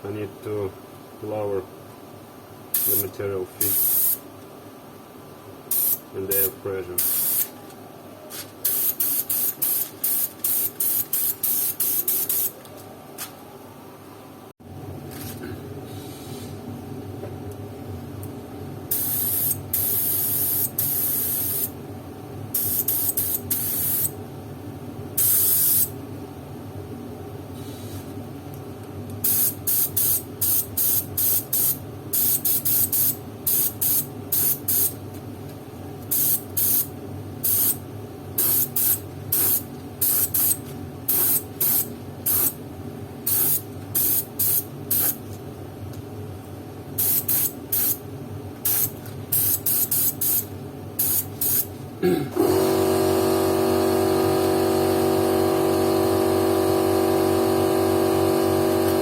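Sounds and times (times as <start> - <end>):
spray gun hissing bursts: 18.9 - 21.7, 38.4 - 42.6, 43.3 - 45.2, 48.6 - 51.7.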